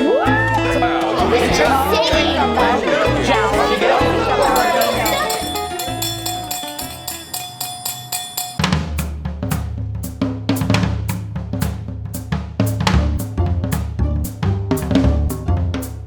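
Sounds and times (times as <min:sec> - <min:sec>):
drum beat with kick and snare: 0:00.0 - 0:16.0.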